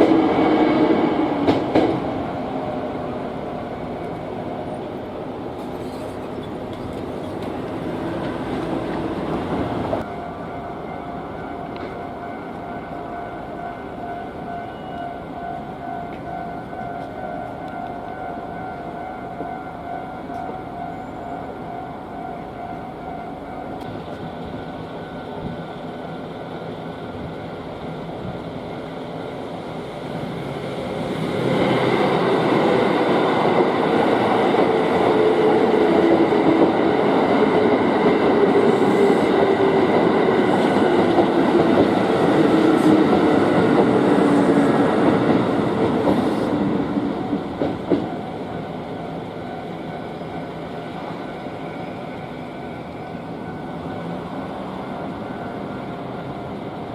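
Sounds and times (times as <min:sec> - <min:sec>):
electric train passing: 0:00.0 - 0:56.9
crossing warning bell ringing: 0:10.0 - 0:26.5.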